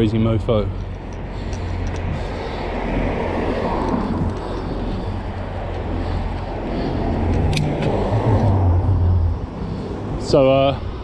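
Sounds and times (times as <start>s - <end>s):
wind and road noise: 0.0s - 11.0s
low hum: 0.8s - 10.2s.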